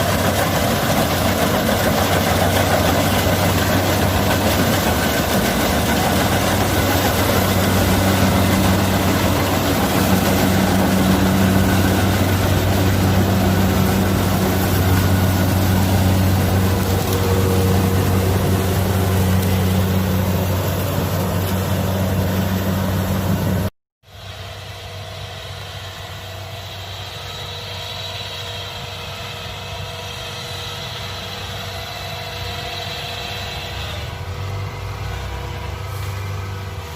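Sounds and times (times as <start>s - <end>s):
combine harvester engine running: 0.0s - 36.9s.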